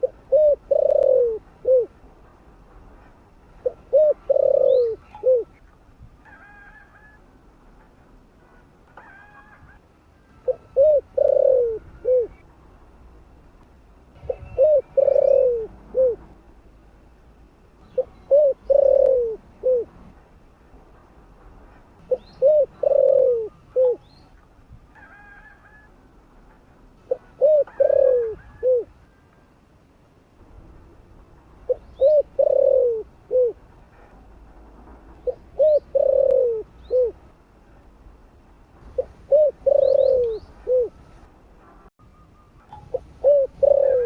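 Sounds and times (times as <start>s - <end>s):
dove cooing: 0.0s - 2.0s, 3.6s - 5.6s, 10.4s - 12.4s, 14.2s - 16.3s, 18.0s - 19.9s, 22.1s - 24.1s, 27.1s - 29.2s, 31.7s - 33.6s, 35.2s - 37.2s, 38.9s - 41.0s, 42.6s - 44.0s.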